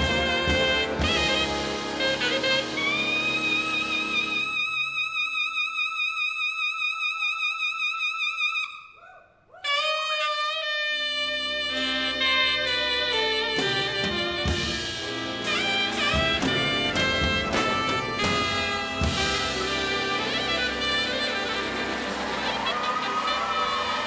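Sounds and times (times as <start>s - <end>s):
big band jazz: 0.0s - 4.8s, 9.6s - 24.0s
horn holding long vibrato note: 9.7s - 24.0s.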